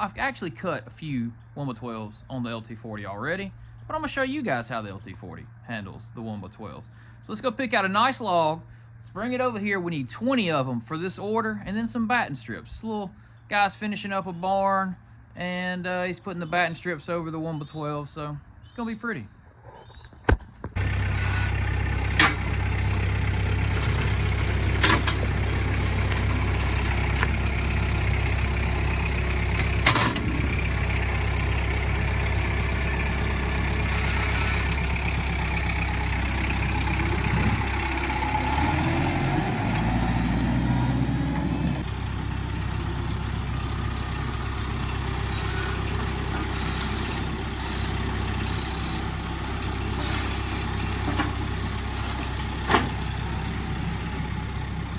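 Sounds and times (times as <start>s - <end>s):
heavy engine running: 20.8s - 54.9s.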